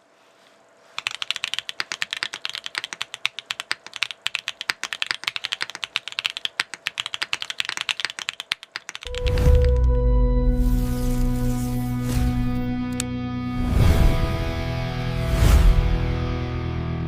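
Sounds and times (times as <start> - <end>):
mechanical keyboard typing: 1.0 - 9.9.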